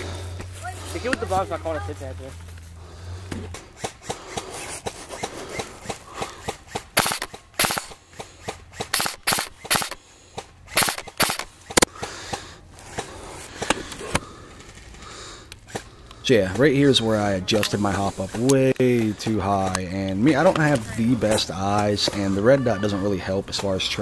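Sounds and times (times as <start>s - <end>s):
airsoft rifle single shots: 6.4s - 10.0s, 10.7s - 11.9s.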